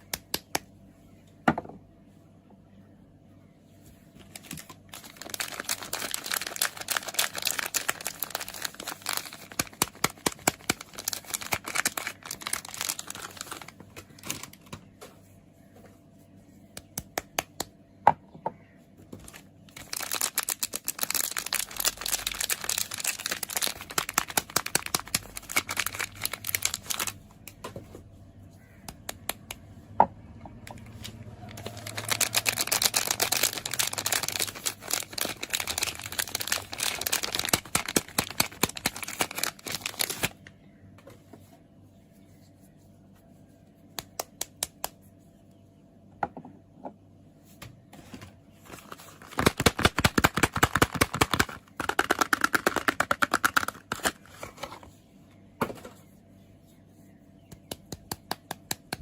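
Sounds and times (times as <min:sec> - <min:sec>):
wrapper crinkling: 0:04.2 - 0:14.8, 0:19.2 - 0:27.2, 0:30.8 - 0:40.5, 0:48.7 - 0:54.6.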